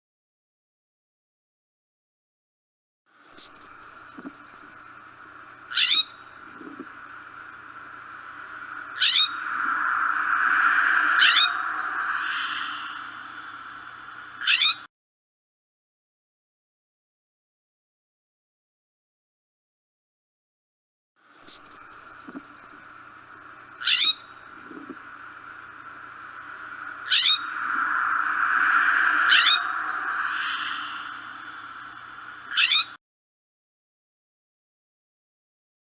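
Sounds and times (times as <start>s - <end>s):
steady hiss: 3.3s - 14.4s, 21.4s - 32.9s
steady background hum: 3.5s - 14.4s, 21.5s - 32.9s
bird harsh calls: 32.5s - 33.0s.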